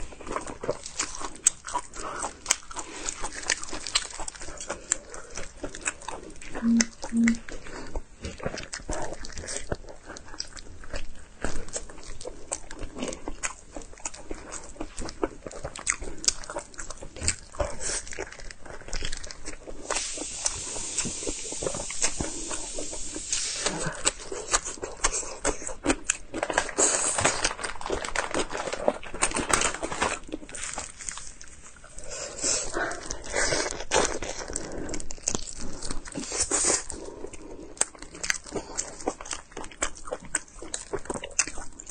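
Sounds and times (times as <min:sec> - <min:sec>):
person chewing: 0:00.0 - 0:41.9
wet smacking mouth sounds: 0:06.6 - 0:07.4.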